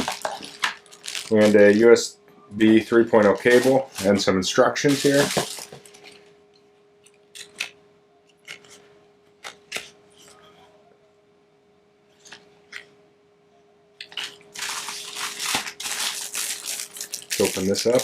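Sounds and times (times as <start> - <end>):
plastic packaging crinkling: 0.0 - 2.0, 2.7 - 6.3, 14.0 - 18.0.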